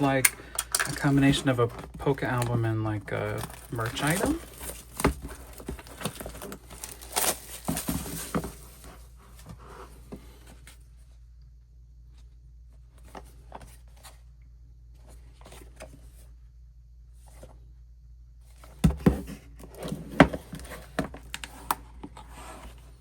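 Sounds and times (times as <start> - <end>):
paper and cardboard rustling: 0.0 - 10.8.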